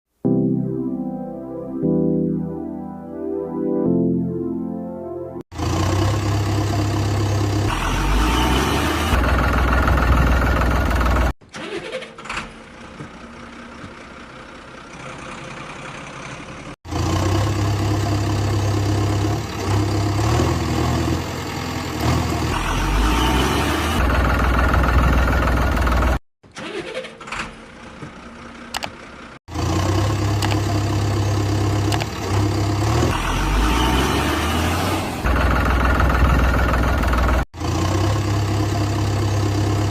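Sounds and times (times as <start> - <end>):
heavy vehicle engine revving: 5.5 - 11.4, 14.6 - 26.2, 29.4 - 39.9.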